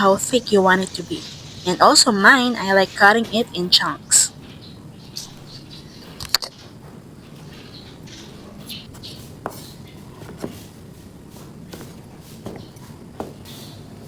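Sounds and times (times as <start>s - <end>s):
birds chirping: 0.0s - 10.6s.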